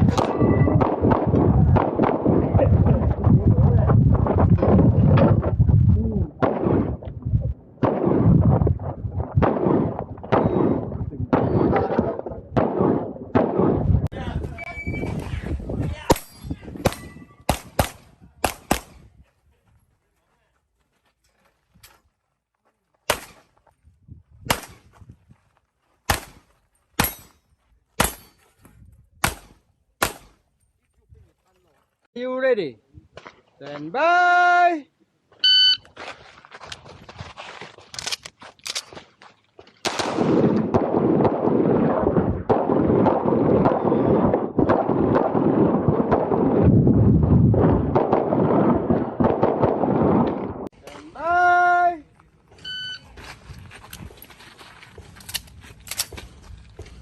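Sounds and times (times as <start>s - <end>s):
handgun shots: 16.1s - 19.0s, 23.1s - 23.5s, 24.5s - 24.8s, 26.1s - 26.4s, 28.0s - 28.4s, 29.2s - 30.4s.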